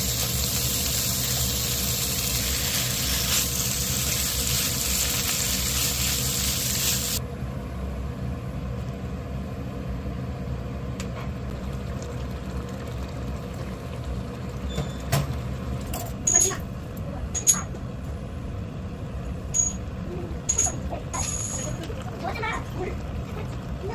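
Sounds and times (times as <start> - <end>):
loud hiss: 0.0 - 7.2
steady low hum: 7.1 - 23.9
sharp ringing clinks: 19.5 - 19.9, 20.5 - 21.8.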